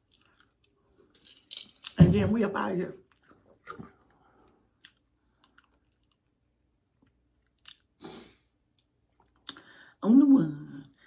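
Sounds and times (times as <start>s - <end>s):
soft chewing mouth sounds: 0.0s - 1.2s, 3.0s - 10.0s.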